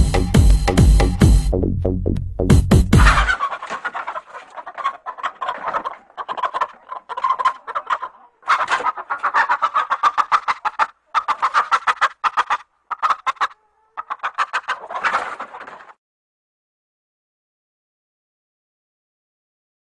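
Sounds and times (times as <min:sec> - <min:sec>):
chicken clucking: 0:02.9 - 0:16.0.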